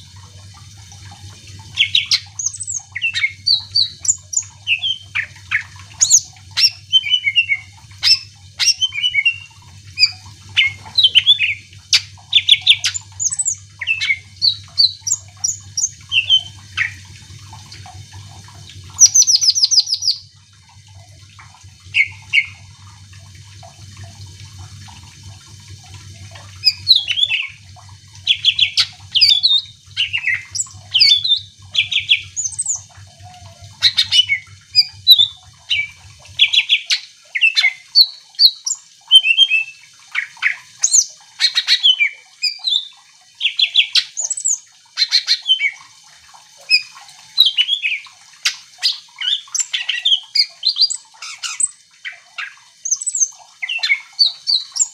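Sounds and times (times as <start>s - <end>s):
bird singing whistled trills: 1.8s - 17.0s, 19.0s - 20.2s, 26.6s - 27.6s, 28.3s - 39.8s.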